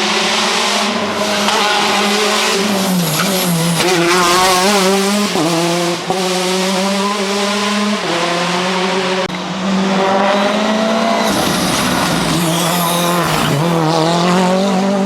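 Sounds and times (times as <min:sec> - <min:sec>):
rally car engine revving hard: 0:00.0 - 0:15.0
loud rushing hiss: 0:11.3 - 0:13.7.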